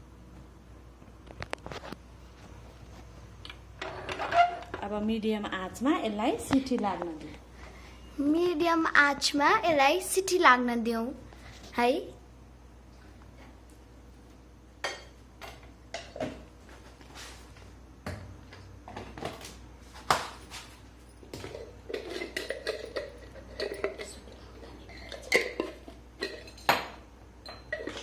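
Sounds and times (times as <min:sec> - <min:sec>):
metal pots and utensils clattering: 0:21.3 - 0:28.0.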